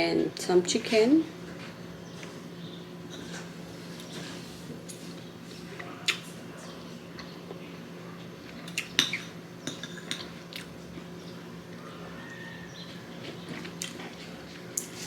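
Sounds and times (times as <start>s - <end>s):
cutlery clinking on a plate: 9.0s - 10.4s.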